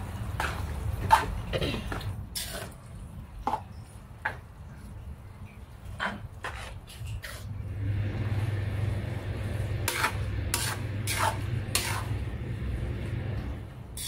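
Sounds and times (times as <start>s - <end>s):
utensil scraping food in pan: 2.4s - 2.8s, 5.9s - 7.6s, 9.4s - 12.9s
steady low hum: 7.5s - 14.0s
sharp scrapes or knocks: 9.8s - 12.2s.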